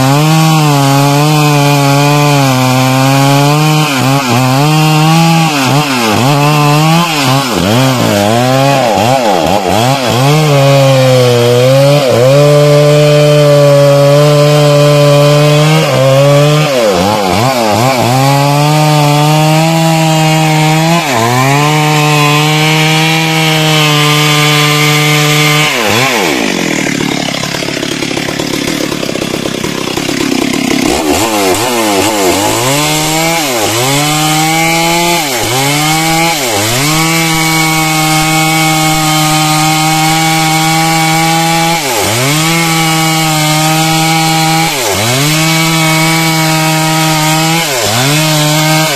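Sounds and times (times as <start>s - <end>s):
chainsaw cutting wood: 0.0s - 48.9s.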